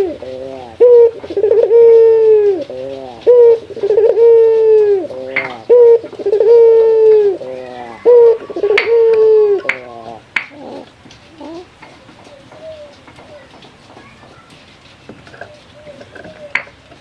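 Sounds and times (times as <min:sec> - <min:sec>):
dove cooing: 0:00.0 - 0:13.9, 0:15.0 - 0:17.0.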